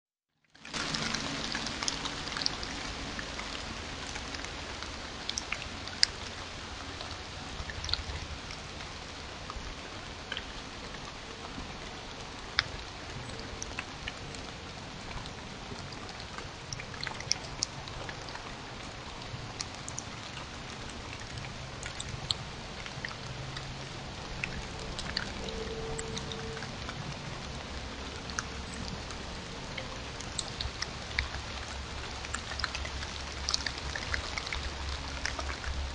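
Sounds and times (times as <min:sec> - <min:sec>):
raindrops ticking: 0:00.4 - 0:35.9
steady rain hiss: 0:00.5 - 0:35.9.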